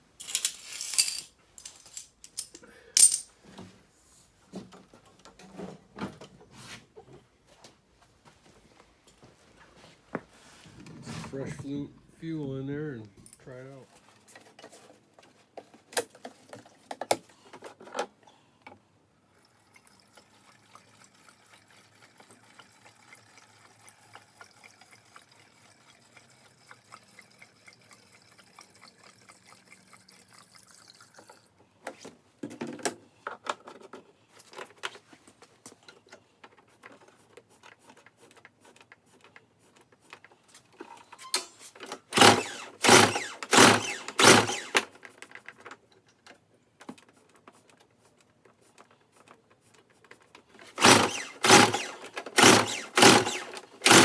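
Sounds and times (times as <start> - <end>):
fuel being poured: 19.3 - 31.7
recoil starter pulls: 41.3 - 45.0, 50.7 - 54.0.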